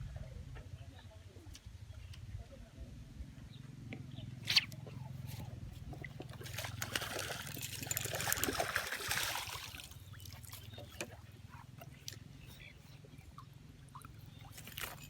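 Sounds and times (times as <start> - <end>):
water splashing and trickling: 5.9 - 15.0.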